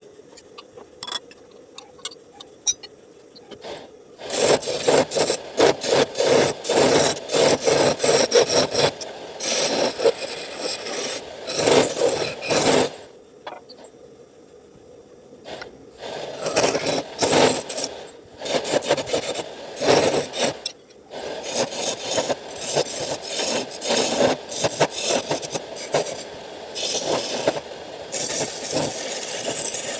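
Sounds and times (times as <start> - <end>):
hand tool sawing wood: 4.3 - 12.9, 21.4 - 26.2, 26.8 - 29.9.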